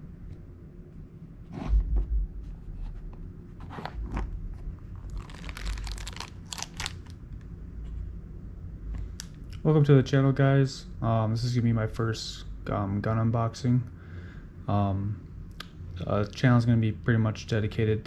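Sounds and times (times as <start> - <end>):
low thumps: 1.5 - 3.3
dense crackling: 4.2 - 7.1
handling clicks and crinkling: 5.0 - 7.5.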